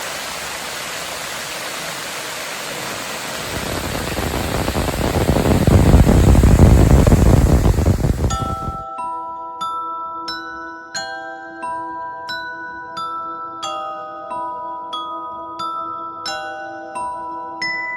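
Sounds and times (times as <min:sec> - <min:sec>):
waterfall rushing: 0:00.0 - 0:08.8.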